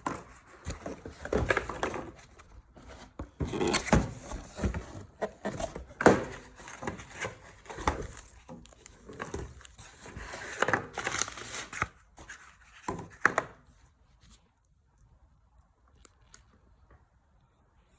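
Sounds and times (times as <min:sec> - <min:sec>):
packaging crinkling: 0:03.4 - 0:12.4.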